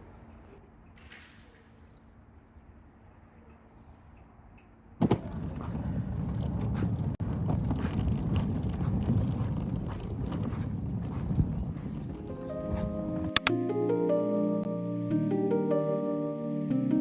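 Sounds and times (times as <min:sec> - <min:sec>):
wind buffeting microphone: 0:05.0 - 0:13.4.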